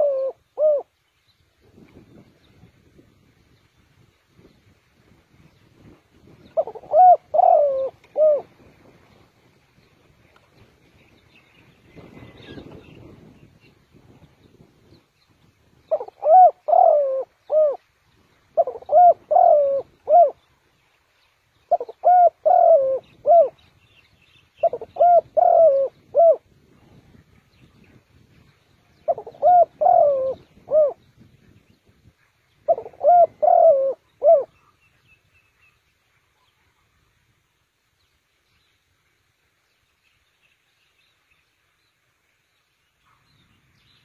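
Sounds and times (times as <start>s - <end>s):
dove cooing: 0.0s - 0.9s, 6.4s - 8.6s, 15.9s - 17.9s, 18.5s - 20.4s, 21.7s - 23.6s, 24.6s - 26.5s, 29.0s - 31.1s, 32.6s - 34.7s.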